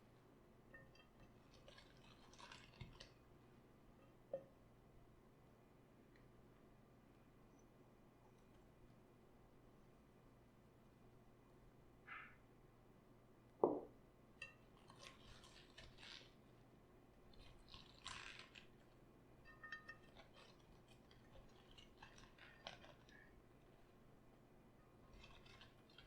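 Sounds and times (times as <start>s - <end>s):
cabbage crunching and crackling: 14.8s - 16.3s, 17.3s - 18.9s, 20.1s - 23.8s, 25.2s - 26.0s.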